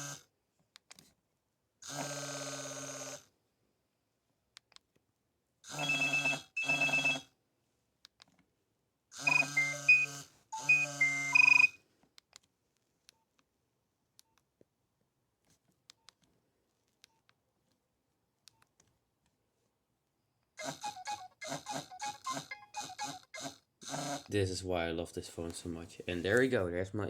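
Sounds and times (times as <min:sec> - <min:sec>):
mobile phone ringtone phrases: 0:09.3 - 0:11.8.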